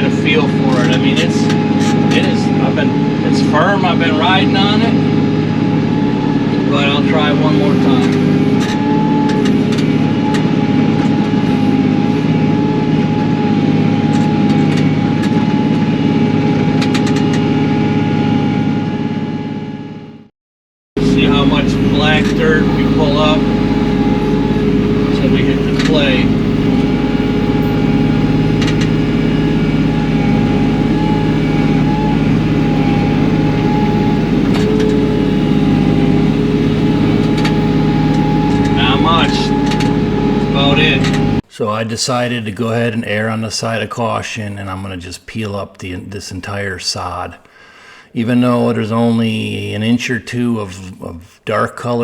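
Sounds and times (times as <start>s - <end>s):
tractor diesel engine running: 0.0s - 20.2s, 21.0s - 41.4s
steady whine: 0.0s - 20.3s, 21.0s - 41.4s.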